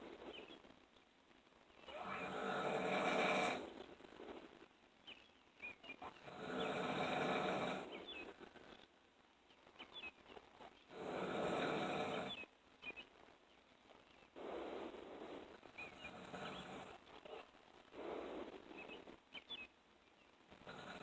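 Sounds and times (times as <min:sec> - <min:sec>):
quiet breathing: 0:01.4 - 0:08.9, 0:09.6 - 0:21.0
person snoring deeply: 0:01.9 - 0:03.6, 0:10.9 - 0:12.3.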